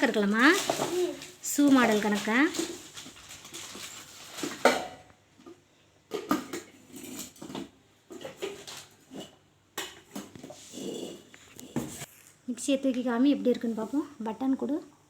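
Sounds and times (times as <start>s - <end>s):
packaging rustling: 0.0s - 4.9s
plastic jars and lids clattering: 0.0s - 12.1s.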